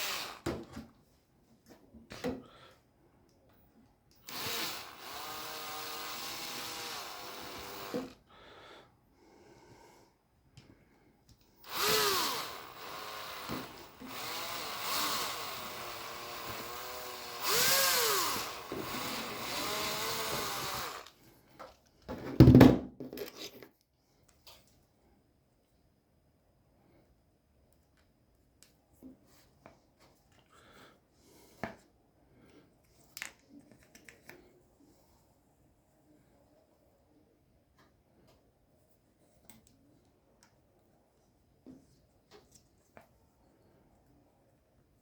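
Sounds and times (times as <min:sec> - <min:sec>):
handheld power tool motor running: 0:00.0 - 0:00.5, 0:04.2 - 0:08.2, 0:11.6 - 0:21.2.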